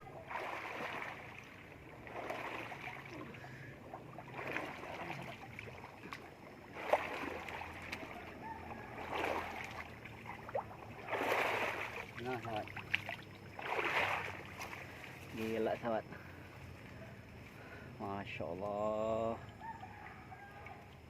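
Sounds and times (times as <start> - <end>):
water splashing and sloshing: 0.0 - 21.0.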